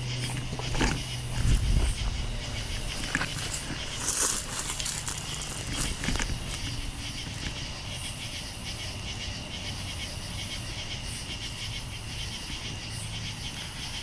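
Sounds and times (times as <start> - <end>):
low rumble: 0.0 - 7.8
crickets trilling: 0.0 - 14.0
higher insect chirps: 0.0 - 14.0.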